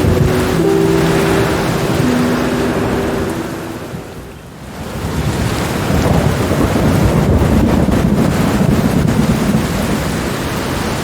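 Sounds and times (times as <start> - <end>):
low rumble of thunder: 4.9 - 11.0.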